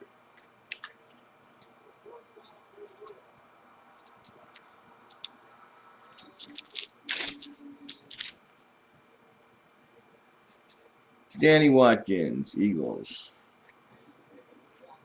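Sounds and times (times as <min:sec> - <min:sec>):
trading cards clicking and scraping: 0:00.4 - 0:01.0, 0:04.0 - 0:08.6.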